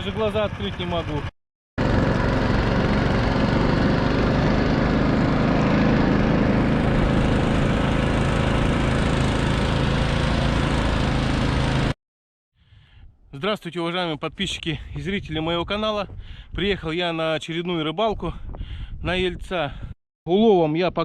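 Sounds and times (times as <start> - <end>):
small single-cylinder engine running: 0.0 - 12.0.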